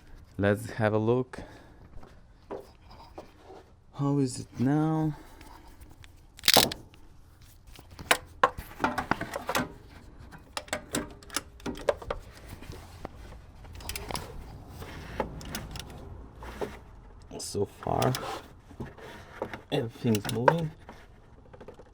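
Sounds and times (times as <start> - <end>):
metallic tool clicks and knocks: 6.4 - 6.8.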